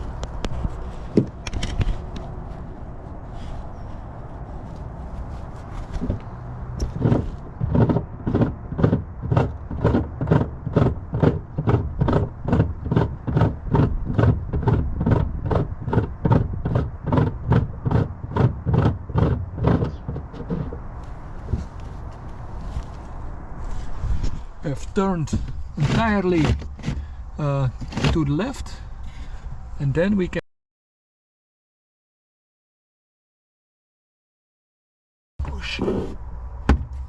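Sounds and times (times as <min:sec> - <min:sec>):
plastic screw scraping: 0:06.8 - 0:20.8, 0:25.2 - 0:27.1.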